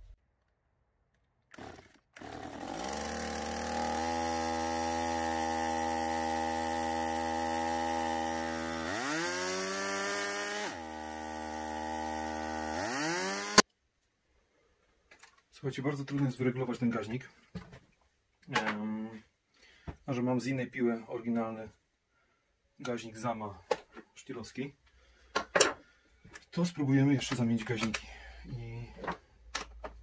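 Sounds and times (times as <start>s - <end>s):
chainsaw engine idling and revving: 1.6s - 13.6s.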